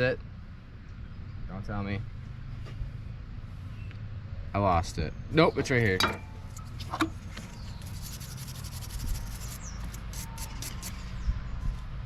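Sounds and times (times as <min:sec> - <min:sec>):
scratchy rubbing strokes: 0:07.8 - 0:11.0.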